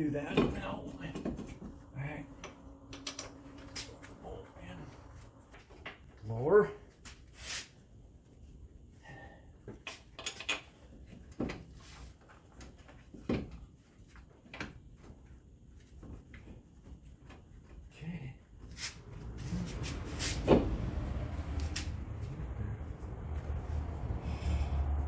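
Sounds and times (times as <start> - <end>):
low rumble: 0.5 - 6.3, 19.0 - 25.0.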